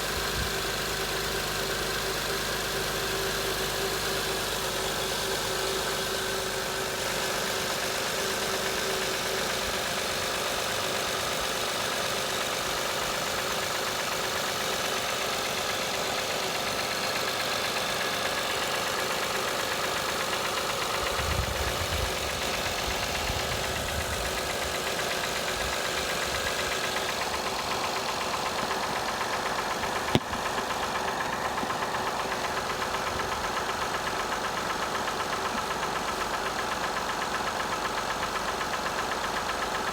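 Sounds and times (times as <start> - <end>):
car engine idling with knocking: 0.0 - 39.9.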